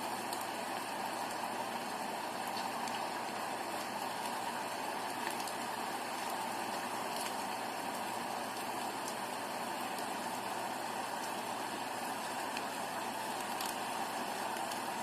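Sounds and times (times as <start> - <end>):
rain hissing: 0.0 - 15.0
raindrop ticks: 1.2 - 3.2, 5.0 - 9.3, 13.3 - 14.8.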